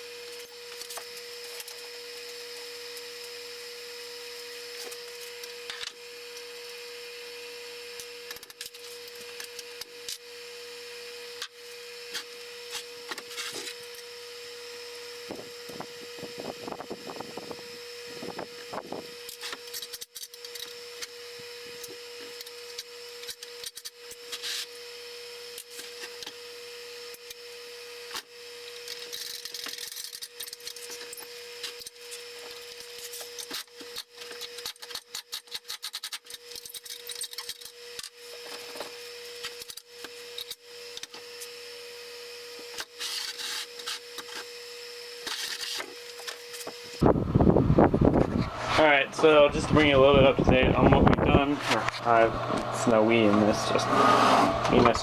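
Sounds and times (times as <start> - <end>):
metal parts scraping: 19.2 - 21.1, 28.6 - 41.6, 42.7 - 47.0
steady hum: 43.7 - 55.0.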